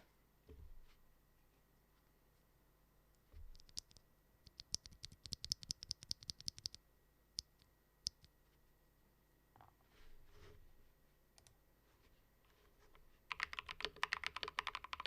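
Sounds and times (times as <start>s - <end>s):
mechanical keyboard typing: 3.5s - 6.8s, 13.3s - 15.0s.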